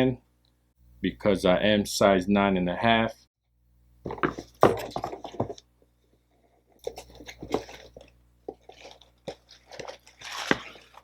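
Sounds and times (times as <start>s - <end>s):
cardboard and wrapping crinkling: 6.6s - 11.0s.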